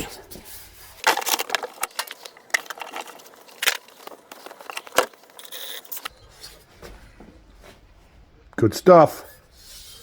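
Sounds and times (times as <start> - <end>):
tools clattering and clicking: 1.0 - 6.2.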